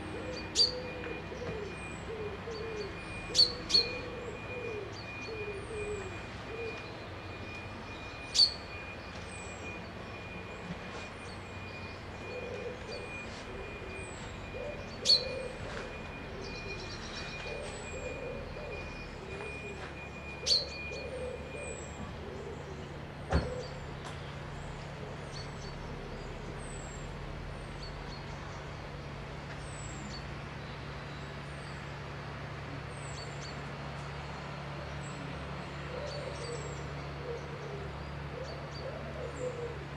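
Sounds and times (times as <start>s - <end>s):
low wavering cooing: 0.0s - 8.8s, 11.5s - 27.0s, 35.7s - 39.9s
birds chirping: 0.0s - 39.9s
sharp bird calls: 0.1s - 7.2s, 7.8s - 10.4s, 11.2s - 24.4s.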